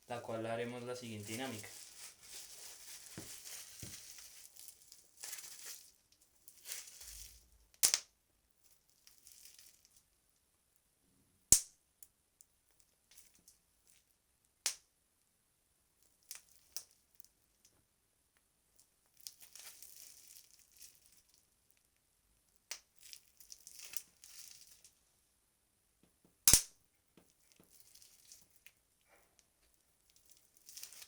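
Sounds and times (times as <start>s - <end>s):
bubble wrap crinkling: 0.2s - 7.6s, 8.6s - 10.0s, 19.1s - 21.9s, 22.8s - 25.0s, 27.3s - 28.8s, 29.8s - 31.0s
bubble wrap popping: 1.0s - 8.1s, 19.1s - 21.4s, 22.6s - 25.0s, 26.4s - 28.8s, 30.1s - 31.0s.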